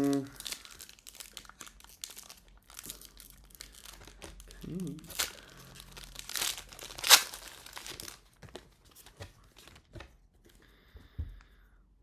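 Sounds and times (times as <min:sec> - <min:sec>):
foil wrapper ripping: 0:00.0 - 0:08.3
foil wrapper crinkling: 0:00.0 - 0:09.8.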